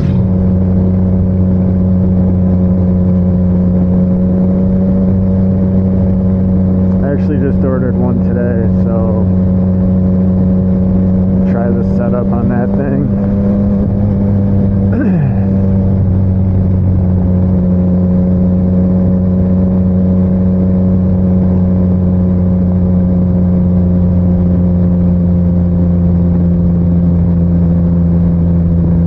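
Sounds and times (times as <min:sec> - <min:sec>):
motorcycle engine cruising: 0:00.0 - 0:29.0.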